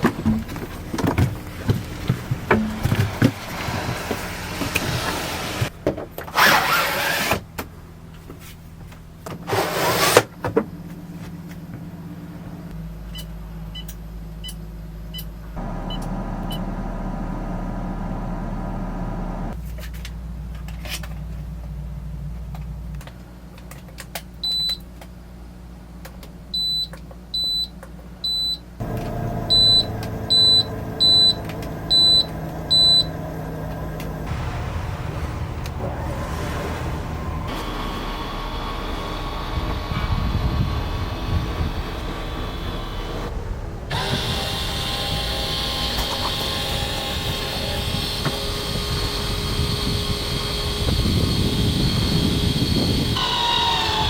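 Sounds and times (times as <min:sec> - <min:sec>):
vehicle running hum: 0:00.0 - 0:53.2
loud rushing noises: 0:28.8 - 0:42.6
short high electronic beeps: 0:29.4 - 0:33.2.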